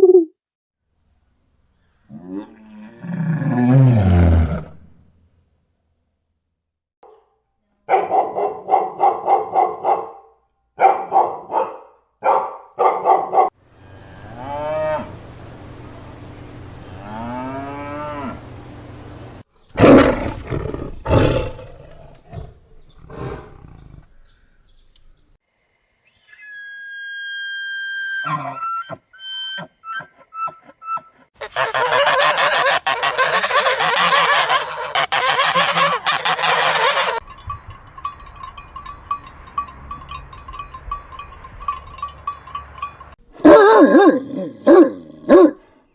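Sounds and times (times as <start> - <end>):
whistle-like animal notes: 26.1 - 31.2
chorus of animal calls: 26.2 - 37.2
pitched animal calls: 26.4 - 37.2.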